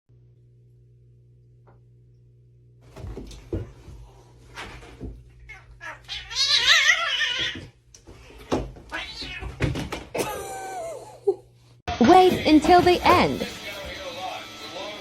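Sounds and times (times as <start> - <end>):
cat yowling: 5.5 - 7.6, 8.9 - 9.5.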